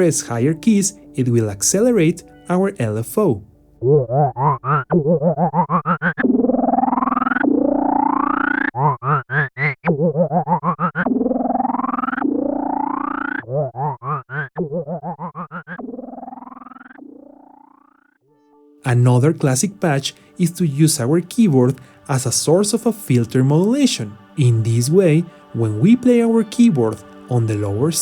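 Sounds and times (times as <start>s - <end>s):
pulsing synthesizer notes: 3.2s - 28.0s.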